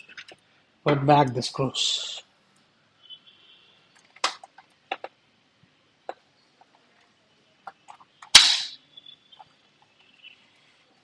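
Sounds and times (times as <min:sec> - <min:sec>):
loud sharp snap: 0:08.3 - 0:08.8.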